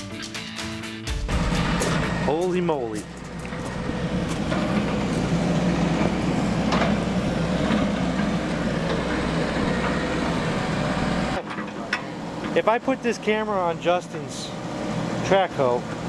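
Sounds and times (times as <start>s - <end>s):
excavator diesel engine running: 1.1s - 16.0s
metallic clanks of bucket: 1.3s - 4.9s.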